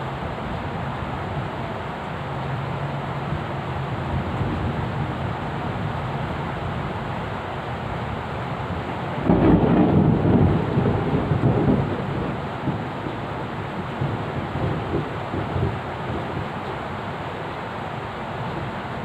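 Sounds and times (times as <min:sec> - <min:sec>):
steady rain: 0:00.0 - 0:19.0
thunder rumbling: 0:09.2 - 0:16.6.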